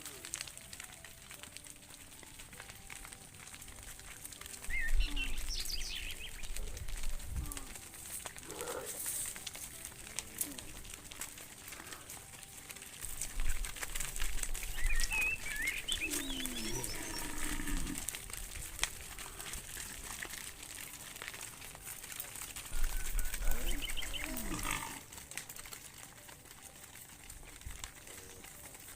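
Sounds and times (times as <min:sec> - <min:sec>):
clicking and rustling: 0:00.0 - 0:28.9
birds chirping: 0:02.7 - 0:12.2, 0:13.0 - 0:18.2, 0:22.7 - 0:25.1
wind rumble on microphone: 0:04.7 - 0:07.8
cow mooing: 0:08.4 - 0:09.0, 0:16.1 - 0:18.2, 0:23.4 - 0:25.1.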